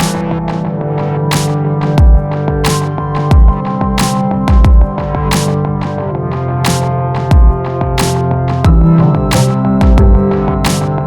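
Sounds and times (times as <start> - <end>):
held synth chords: 0.0 - 11.0
deep bass kicks: 2.0 - 2.7, 3.3 - 5.3, 8.6 - 10.8.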